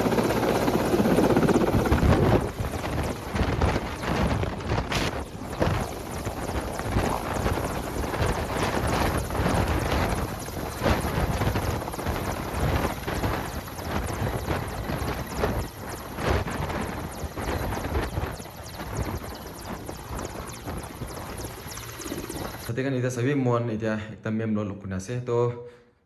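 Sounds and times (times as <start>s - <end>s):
helicopter rotor chopping: 0.0s - 22.7s.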